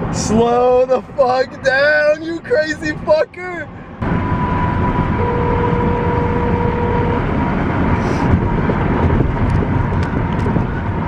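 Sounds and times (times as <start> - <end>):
road and tyre noise in car: 0.0 - 11.0
lower tone: 3.7 - 8.2.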